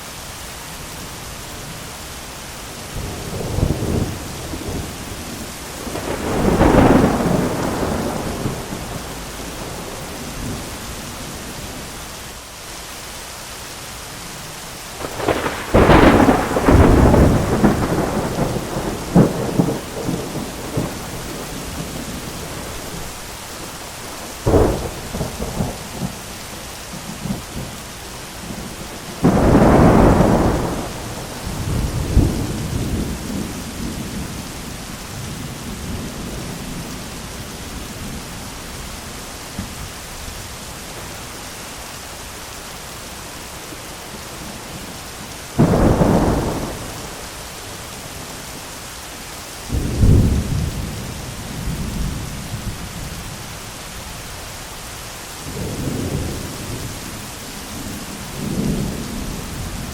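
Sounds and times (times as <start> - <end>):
heavy rain: 0.0 - 59.9
thunder crashes: 5.8 - 10.0, 15.0 - 21.3, 45.6 - 47.2.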